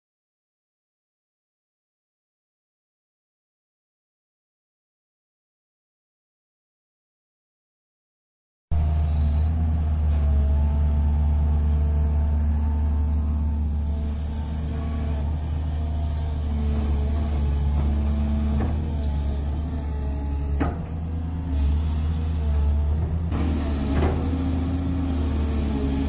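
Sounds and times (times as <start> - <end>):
excavator diesel engine droning: 8.7 - 26.0.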